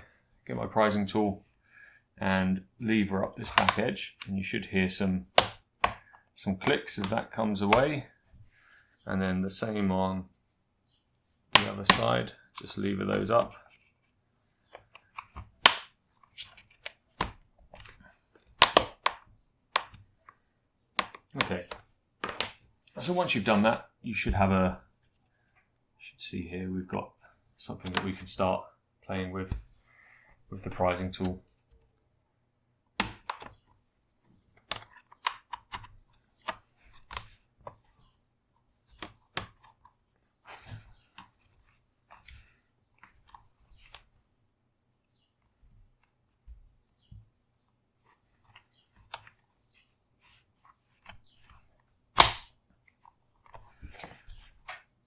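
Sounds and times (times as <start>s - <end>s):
plastic clips snapping: 3.4s - 3.8s, 5.4s - 7.9s, 11.6s - 12.7s, 14.9s - 16.6s, 18.6s - 19.2s, 19.8s - 20.0s, 21.0s - 22.6s, 33.0s - 33.6s, 52.2s - 52.6s.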